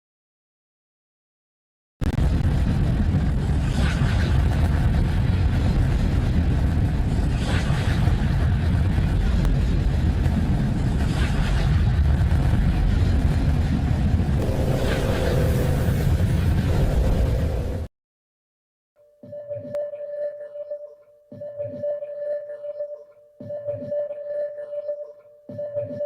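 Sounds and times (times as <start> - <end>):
low rumbling drone: 2.1 - 17.9
faint hissing swell: 14.4 - 17.9.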